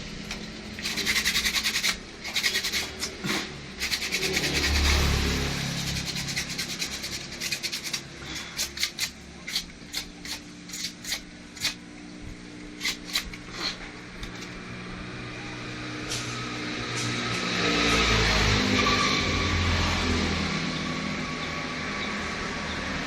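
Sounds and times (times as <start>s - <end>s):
steady low hum: 0.0s - 17.5s
hand scrubbing strokes: 0.8s - 3.2s, 3.8s - 11.8s.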